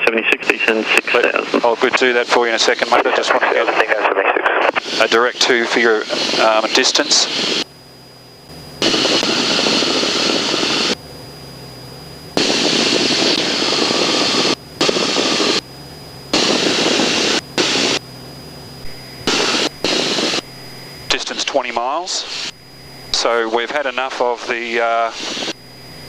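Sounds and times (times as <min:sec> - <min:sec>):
radio hiss bursts: 0:00.0 - 0:07.7, 0:08.8 - 0:11.0, 0:12.4 - 0:15.6, 0:16.3 - 0:18.0, 0:18.8 - 0:26.0
airplane engine drone: 0:00.0 - 0:26.0.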